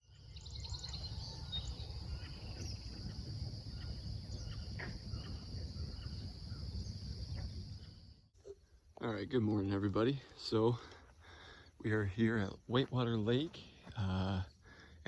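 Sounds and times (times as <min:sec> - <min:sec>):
bird chirps: 0:00.0 - 0:08.8
crickets chirping: 0:00.1 - 0:15.0.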